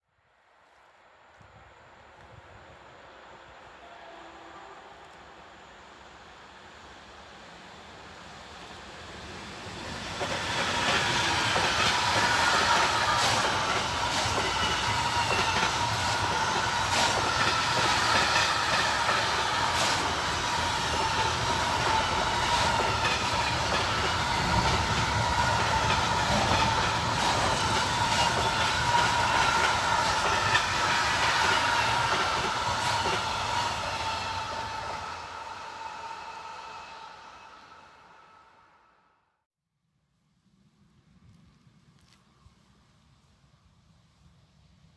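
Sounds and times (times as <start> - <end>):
train rumble: 1.6 - 38.8
wheels clacking over rail joints: 9.9 - 34.6.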